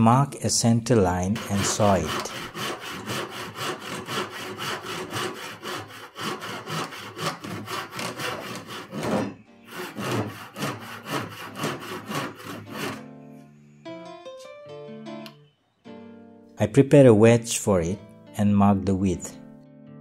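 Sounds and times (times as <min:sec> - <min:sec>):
hand saw cutting wood: 0:01.2 - 0:13.1.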